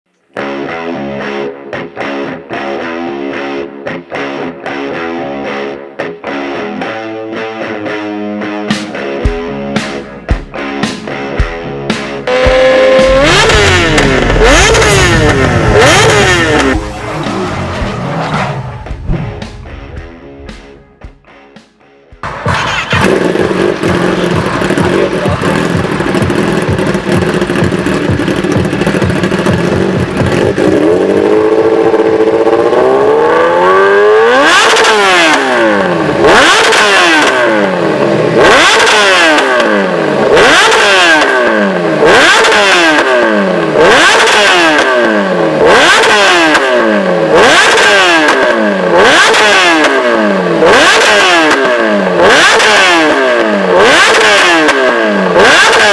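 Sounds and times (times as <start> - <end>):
motorcycle engine idling and revving: 8.1 - 55.9.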